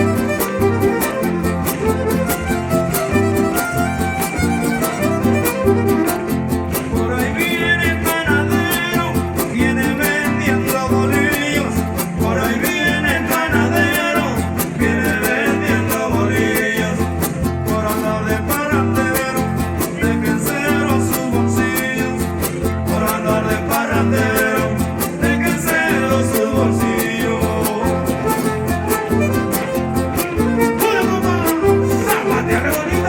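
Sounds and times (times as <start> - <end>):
violin melody: 0.0 - 6.8, 28.2 - 33.0
strummed guitars: 0.0 - 33.0.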